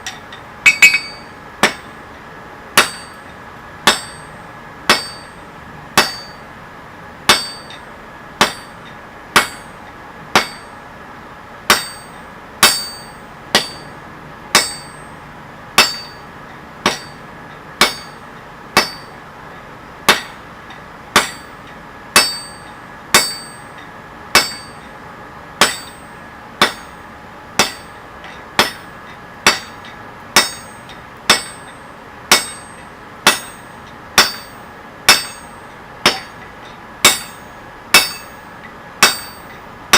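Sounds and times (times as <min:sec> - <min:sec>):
hammer blows on steel anvil: 0:00.0 - 0:01.9, 0:29.5 - 0:36.4, 0:37.0 - 0:38.4.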